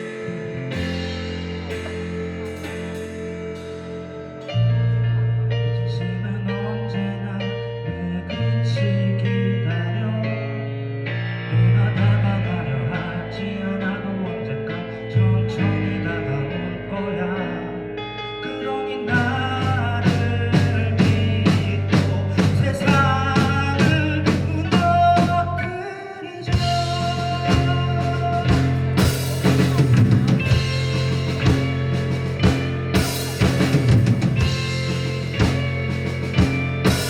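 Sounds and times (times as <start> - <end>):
drum kit beat: 0.0 - 4.5, 19.1 - 25.5, 26.5 - 37.0
live rock band with singer: 0.0 - 37.0.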